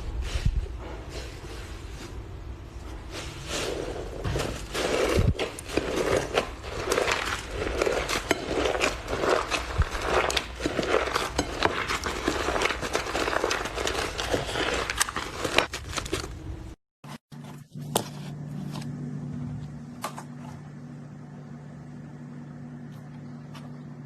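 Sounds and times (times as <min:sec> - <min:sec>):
slime squelching: 0:03.1 - 0:16.2
sticky clicks and crackles: 0:05.1 - 0:16.4.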